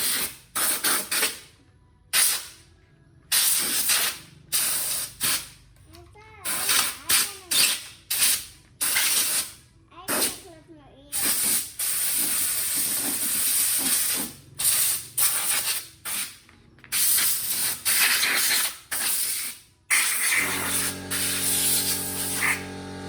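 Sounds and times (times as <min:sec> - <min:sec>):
air blow gun hissing bursts: 0:03.3 - 0:05.5, 0:06.5 - 0:09.6, 0:11.1 - 0:16.4, 0:17.0 - 0:23.0
steady motor hum: 0:20.4 - 0:23.0.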